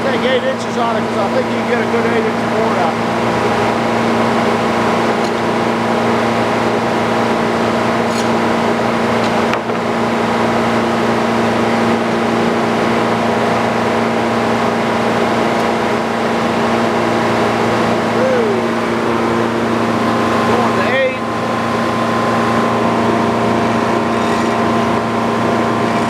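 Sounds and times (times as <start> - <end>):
sawmill engine running: 0.0 - 26.0.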